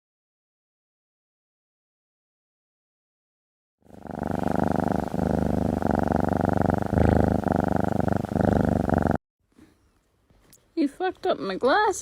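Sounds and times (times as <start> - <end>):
cat purring: 3.8 - 9.2.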